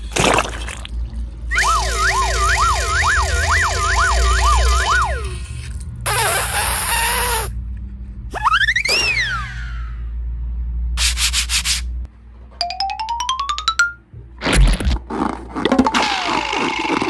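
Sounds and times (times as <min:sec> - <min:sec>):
sharply rising whistle: 0:01.5 - 0:05.5, 0:08.5 - 0:09.8
whooping siren tones: 0:01.5 - 0:05.5.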